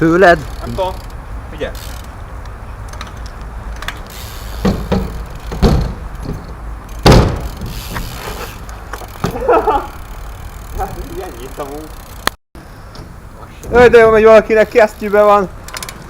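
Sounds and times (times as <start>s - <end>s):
sharp thumps and knocks: 3.8s - 9.4s.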